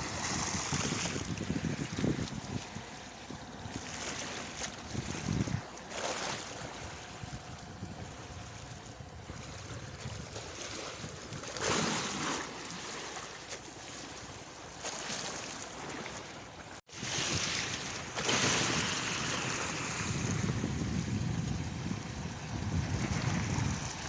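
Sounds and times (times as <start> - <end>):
wind rushing on microphone: 0.0 - 4.0, 4.7 - 12.2, 16.9 - 24.0
sea waves washing in: 0.0 - 24.0.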